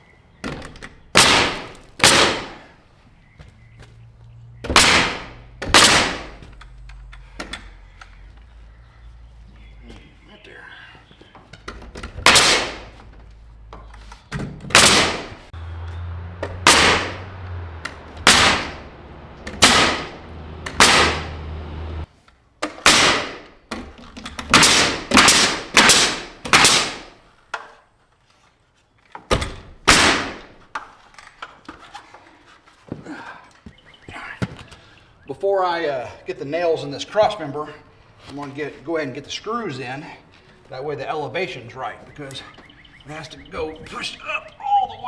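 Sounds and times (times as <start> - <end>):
hammer driving nails into wood: 4.6 - 6.5, 11.7 - 13.0, 14.6 - 15.4, 22.6 - 27.1.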